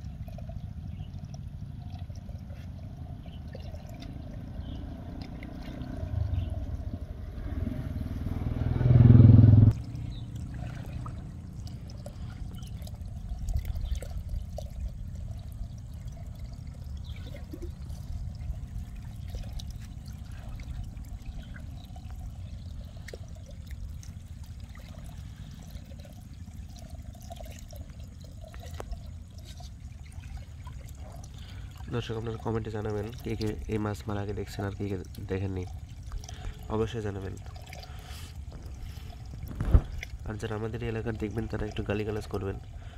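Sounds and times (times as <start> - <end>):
low rumble: 0.0 - 25.4
water trickling and pouring: 0.0 - 42.9.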